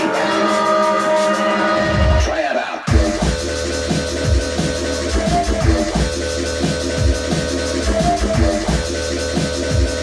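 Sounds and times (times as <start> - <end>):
breakbeat drums: 0.0 - 2.3, 2.9 - 10.0
deep sub-bass hits: 2.9 - 8.9.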